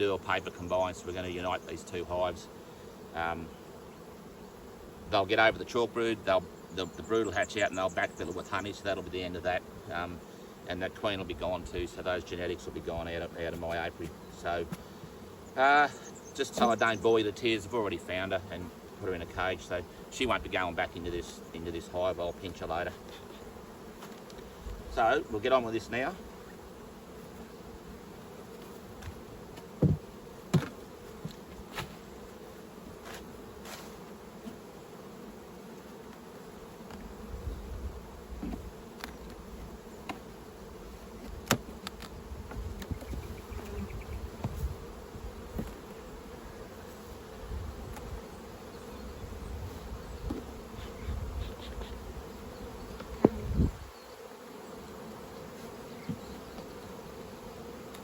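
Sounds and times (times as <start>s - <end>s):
bees buzzing: 0.0s - 58.0s
hive boxes knocking: 28.6s - 32.0s, 38.3s - 40.3s, 41.2s - 46.0s, 50.1s - 50.8s, 52.9s - 53.7s, 55.9s - 56.8s.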